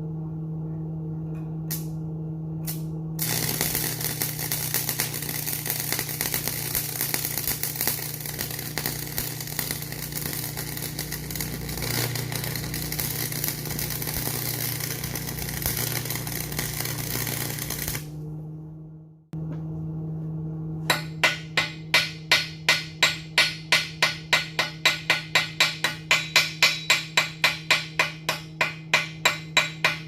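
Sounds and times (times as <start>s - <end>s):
constant low hum: 0.0s - 30.0s
welding arc crackling and sizzling: 2.6s - 18.2s.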